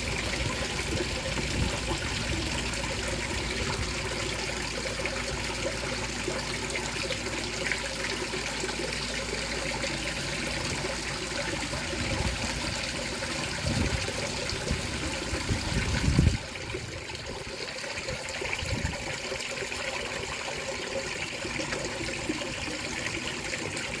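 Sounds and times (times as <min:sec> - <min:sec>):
wind buffeting microphone: 0:00.0 - 0:04.2, 0:12.0 - 0:12.8, 0:13.4 - 0:19.2
trickling water: 0:00.0 - 0:24.0.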